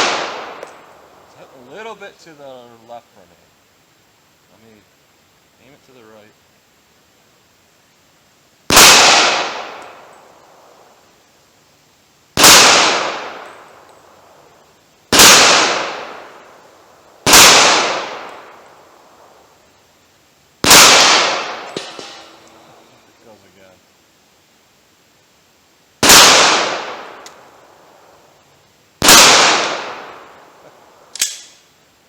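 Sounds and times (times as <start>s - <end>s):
pistol shots: 0.0s - 0.8s, 8.7s - 10.0s, 12.4s - 13.6s, 15.1s - 16.3s, 17.2s - 18.5s, 20.6s - 22.6s, 26.0s - 27.4s, 29.0s - 30.4s.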